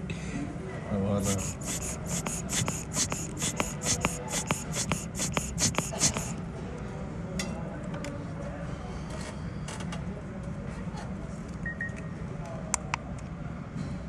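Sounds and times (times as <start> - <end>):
quick repeated scraping strokes: 1.2 - 6.4.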